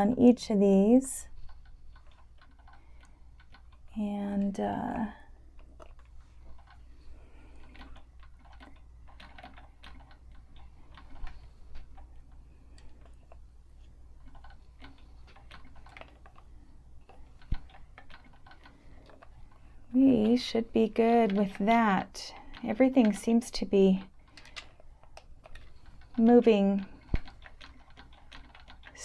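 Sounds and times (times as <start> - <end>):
sewing machine mechanism clicking: 22.3 - 29.0.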